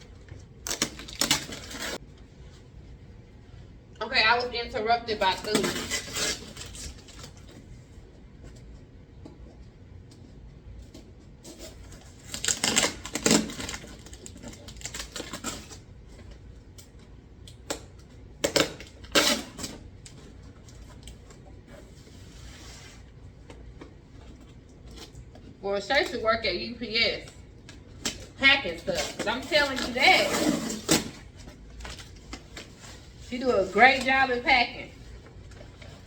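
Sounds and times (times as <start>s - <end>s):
packaging crackling and rustling: 0.2s - 2.0s, 5.3s - 7.7s, 11.4s - 17.0s, 27.6s - 36.0s.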